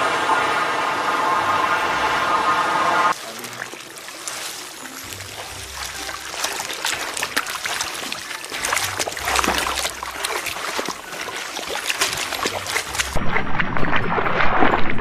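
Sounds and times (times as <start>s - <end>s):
water splashing and trickling: 3.1s - 15.0s.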